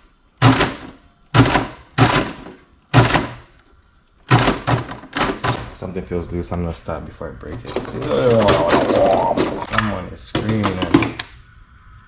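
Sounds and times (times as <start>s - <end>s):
toy car slamming down: 7.8s - 11.3s.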